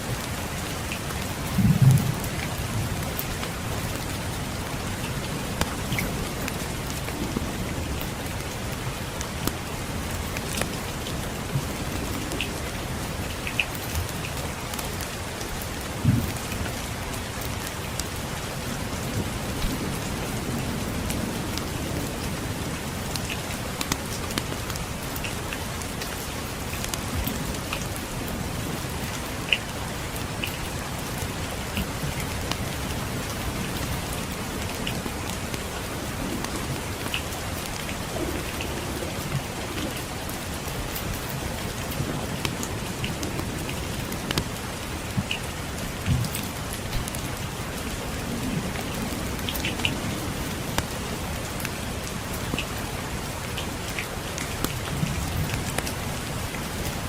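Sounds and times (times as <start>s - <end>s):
steady rain: 0.0s - 57.0s
distant thunder rumbling: 1.5s - 3.2s.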